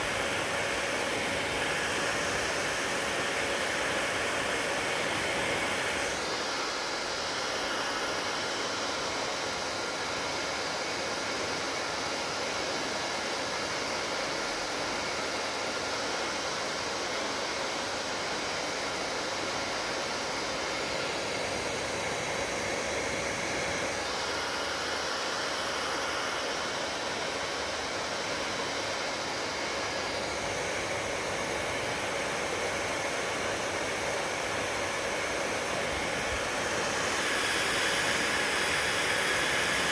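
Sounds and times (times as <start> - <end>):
hair dryer running: 0.0 - 39.9.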